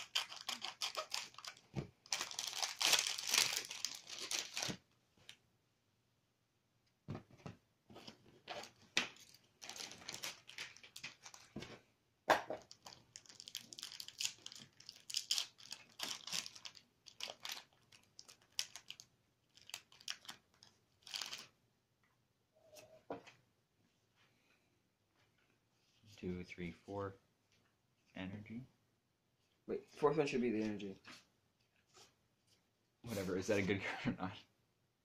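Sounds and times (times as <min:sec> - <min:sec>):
packaging crinkling: 0:00.0 - 0:04.8, 0:08.4 - 0:11.5, 0:12.6 - 0:21.5
packaging ripping: 0:00.0 - 0:04.8, 0:08.5 - 0:11.5, 0:12.6 - 0:21.5.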